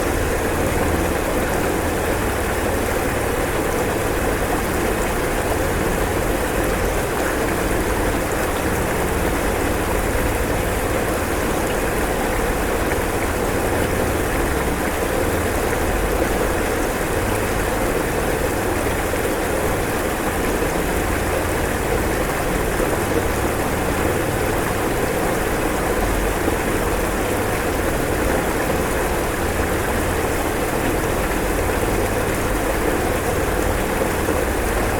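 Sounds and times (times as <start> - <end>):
floodwater rushing: 0.0 - 34.9.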